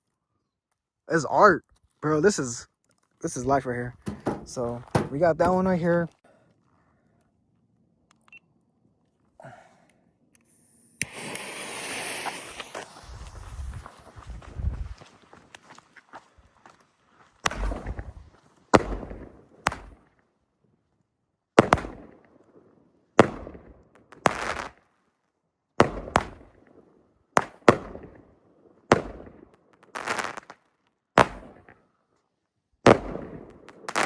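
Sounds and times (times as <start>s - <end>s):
fireworks bangs: 11.0s - 15.2s, 17.4s - 20.1s, 31.2s - 31.7s, 32.9s - 34.0s.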